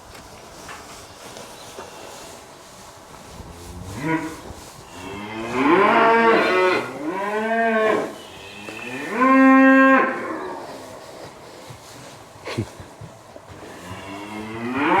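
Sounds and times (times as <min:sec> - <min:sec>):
cattle mooing: 0:03.5 - 0:10.7.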